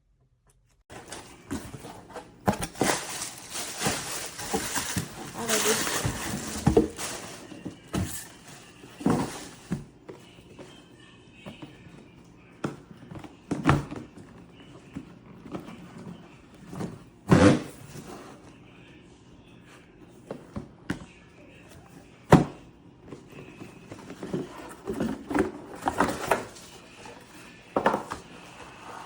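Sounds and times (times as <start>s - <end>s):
handling knocks and thuds: 0.9s - 9.9s.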